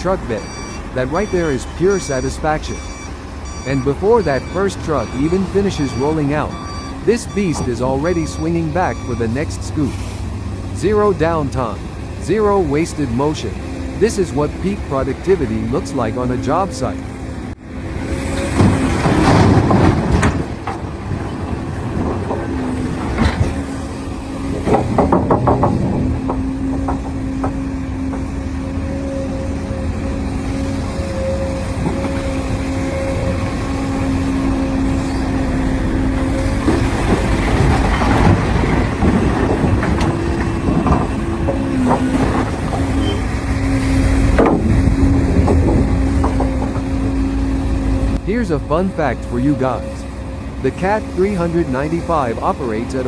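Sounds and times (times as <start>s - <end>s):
excavator engine and hydraulics hum: 0.0s - 53.0s
metallic clanks and knocks: 24.5s - 28.4s, 36.6s - 47.3s.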